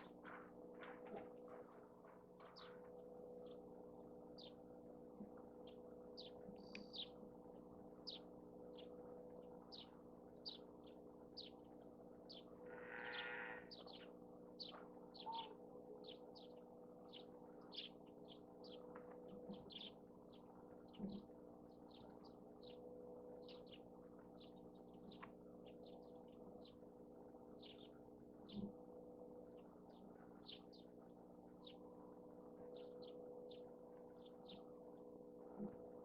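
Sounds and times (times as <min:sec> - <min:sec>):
steady low hum: 0:00.0 - 0:36.0
small bird chirping: 0:12.3 - 0:21.2.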